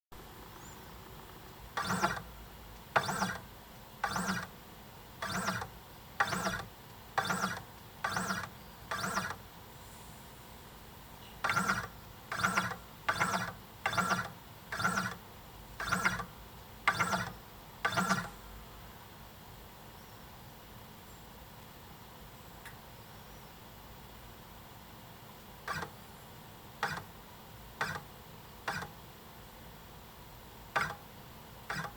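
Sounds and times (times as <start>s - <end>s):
stepper motor buzzing: 0.6s - 2.3s, 2.9s - 4.6s, 5.2s - 9.4s, 11.4s - 15.2s, 15.8s - 18.4s.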